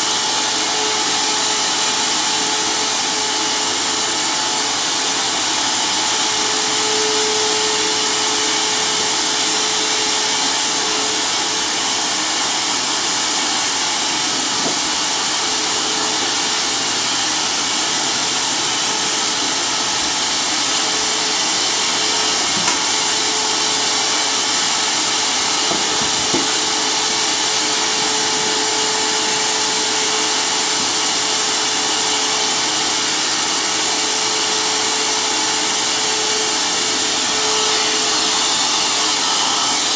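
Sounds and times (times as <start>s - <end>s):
circular saw motor whine: 0.0s - 39.9s.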